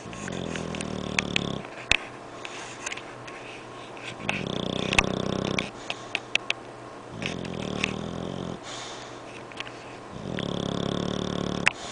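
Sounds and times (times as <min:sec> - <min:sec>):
dog snoring: 0:00.0 - 0:01.7, 0:04.2 - 0:05.8, 0:07.1 - 0:09.1, 0:10.1 - 0:11.9.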